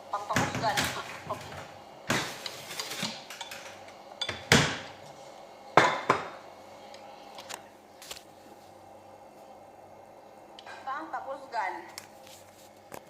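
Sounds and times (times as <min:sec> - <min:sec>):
utensils and dishes clattering: 0:00.4 - 0:04.7.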